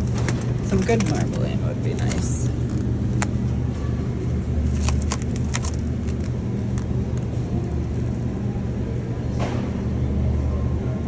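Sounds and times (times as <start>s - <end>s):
plastic packaging crinkling: 0.0s - 8.3s
low machine hum: 0.0s - 11.0s.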